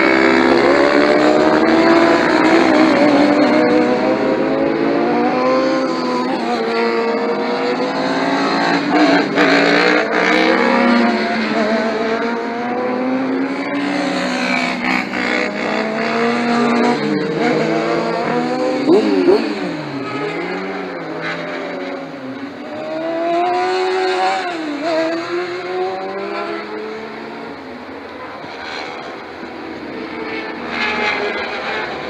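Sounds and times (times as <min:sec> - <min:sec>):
motorcycle engines revving: 0:00.0 - 0:32.0.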